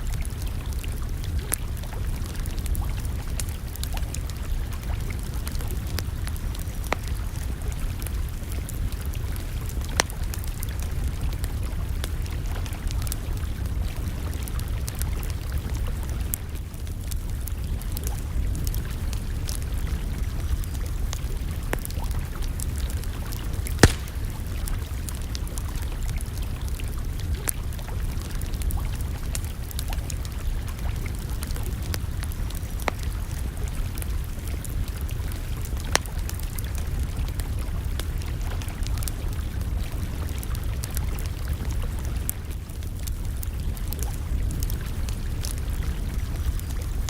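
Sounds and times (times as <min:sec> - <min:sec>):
campfire crackling: 0:00.0 - 0:47.0
sharp fire pops: 0:23.8 - 0:24.8.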